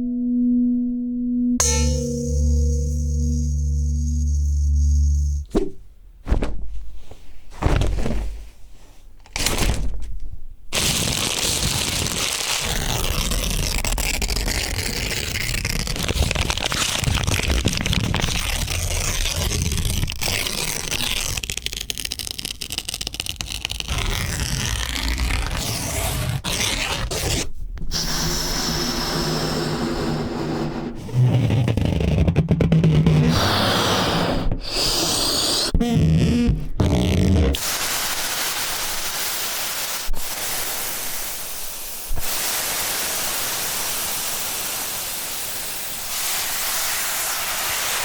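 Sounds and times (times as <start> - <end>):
steady tones: 0.0 - 5.5.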